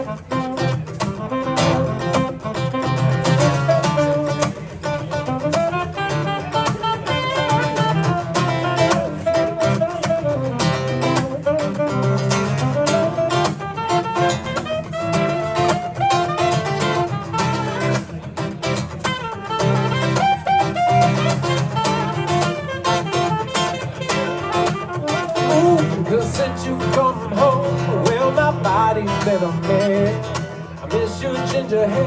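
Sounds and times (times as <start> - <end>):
guitar: 0.0 - 32.0
bass: 25.6 - 32.0.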